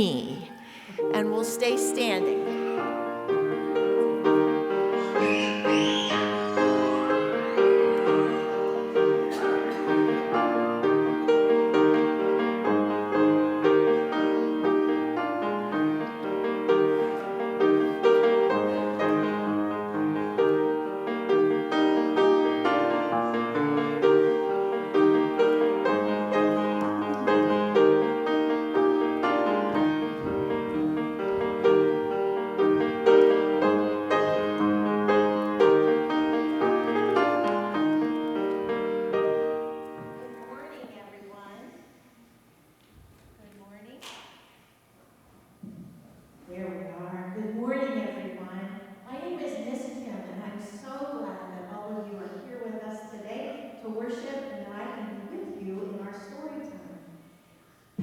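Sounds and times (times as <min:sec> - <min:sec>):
slow piano chords: 0:00.0 - 0:41.0.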